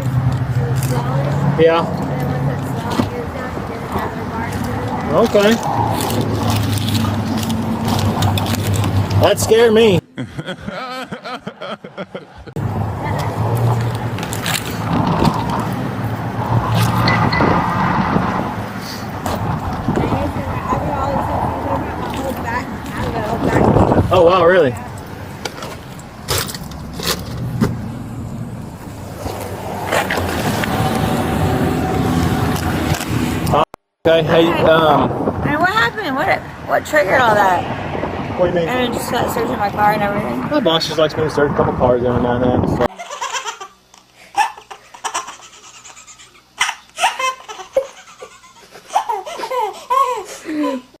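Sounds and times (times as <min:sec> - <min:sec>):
person laughing: 0:10.0 - 0:12.6, 0:47.8 - 0:51.0
vehicle engine running: 0:12.6 - 0:33.6.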